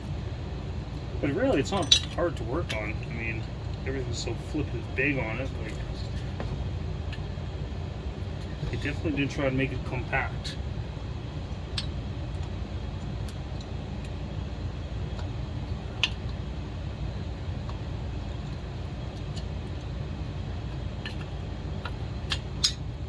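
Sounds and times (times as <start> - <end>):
steady low hum: 0.0 - 23.0
metal tool clicks and clinks: 1.6 - 2.2.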